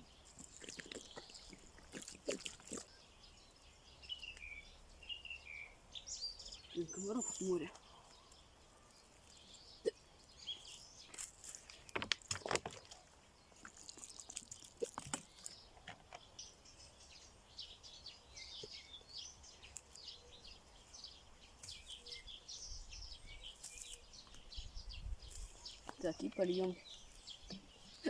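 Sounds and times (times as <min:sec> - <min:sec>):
small birds chirping: 0:00.0 - 0:28.0
handling knocks and rustles: 0:11.0 - 0:16.3.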